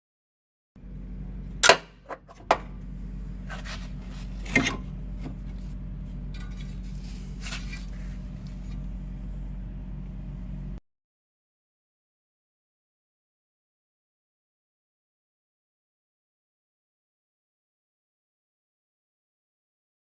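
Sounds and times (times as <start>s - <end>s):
car engine hum inside cabin: 0.8s - 10.8s.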